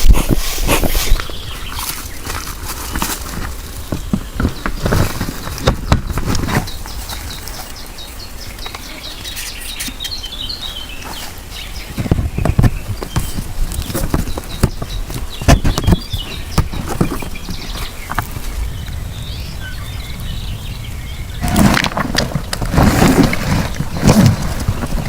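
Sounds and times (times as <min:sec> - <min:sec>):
small birds chirping: 0:00.0 - 0:25.0
knocks and thumps: 0:11.9 - 0:18.4.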